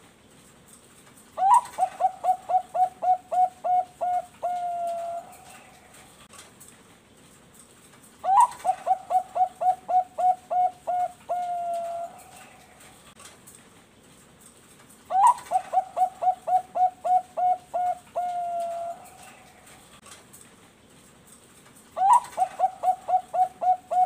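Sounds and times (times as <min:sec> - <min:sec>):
zebra dove cooing: 0:01.4 - 0:06.0, 0:08.2 - 0:12.9, 0:15.1 - 0:19.9, 0:22.0 - 0:24.0.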